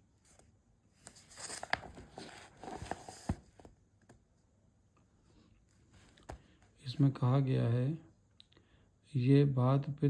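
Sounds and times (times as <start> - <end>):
paper rustling: 1.0 - 3.7.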